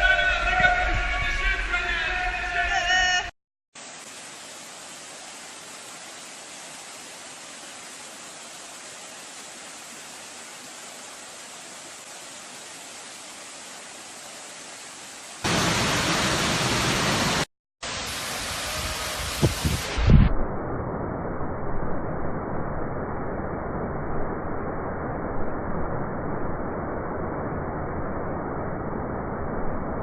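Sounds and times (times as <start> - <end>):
waterfall rushing: 3.8 - 20.1.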